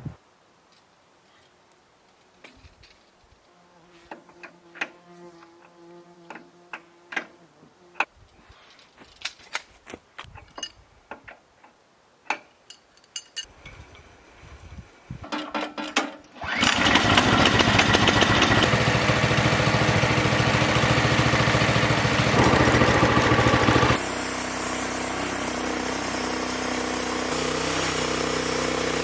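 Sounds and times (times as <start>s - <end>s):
fly buzzing: 3.4s - 8.1s.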